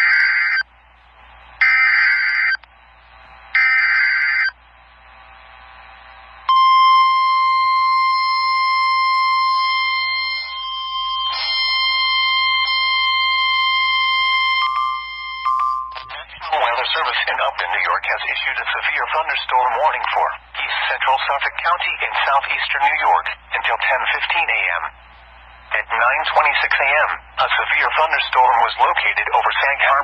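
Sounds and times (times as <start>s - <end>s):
steady warning tone: 1.6s - 2.7s, 3.4s - 30.0s
warbling digital data tones: 3.6s - 4.5s.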